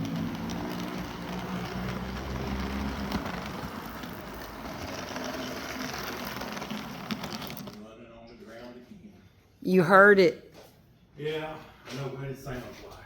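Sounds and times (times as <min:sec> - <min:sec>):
model train motor hum: 0:00.0 - 0:07.8.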